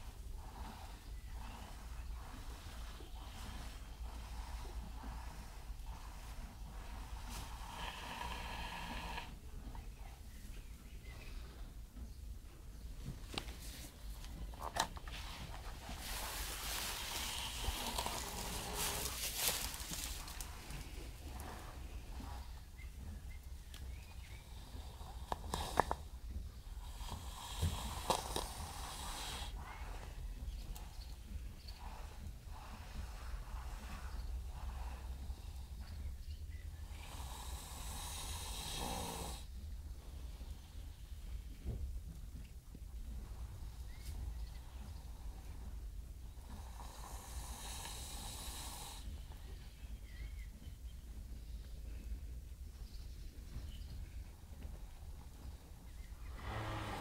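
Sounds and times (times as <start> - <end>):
horse snoring: 0.0 - 10.3, 15.7 - 41.2, 43.3 - 49.5, 55.4 - 57.0
steady low rumble: 0.0 - 37.5.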